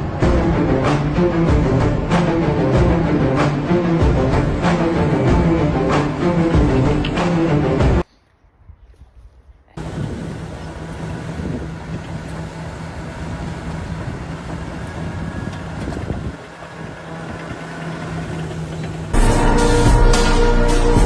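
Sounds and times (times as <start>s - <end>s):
motor engine running: 9.8s - 21.0s.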